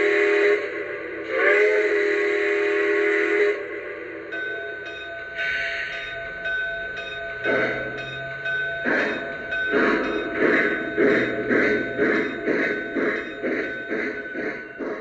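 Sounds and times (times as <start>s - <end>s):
steam exhaust chuffs: 0.0s - 15.0s
steady high tone: 4.3s - 15.0s.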